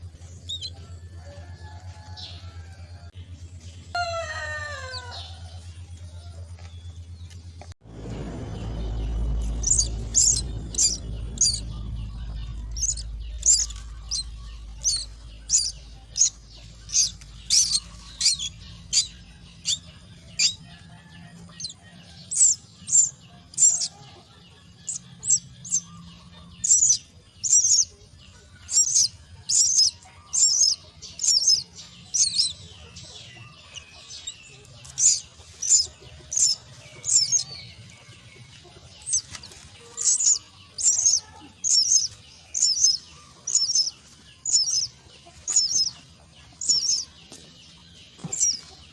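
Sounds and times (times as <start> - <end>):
chicks begging calls: 0.0 - 48.9
low rumble: 5.1 - 48.8.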